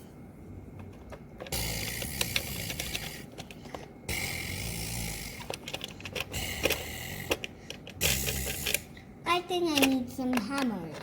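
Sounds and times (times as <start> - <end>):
toy buzzing and whirring: 1.4 - 9.0.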